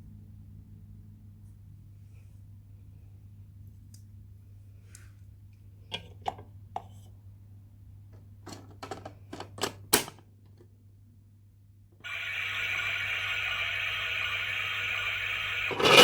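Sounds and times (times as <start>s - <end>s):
dishwasher rushing water: 14.4s - 16.0s.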